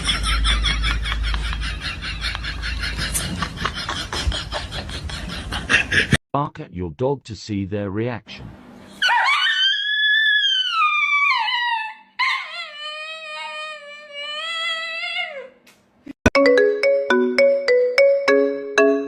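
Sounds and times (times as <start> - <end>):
marimba-like tune: 16.4 - 19.0.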